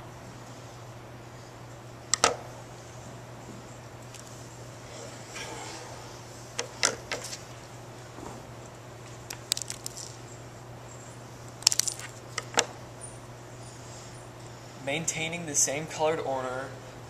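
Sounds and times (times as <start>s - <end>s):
steady low hum: 0.0s - 17.0s
cutters snipping wires: 2.1s - 2.4s.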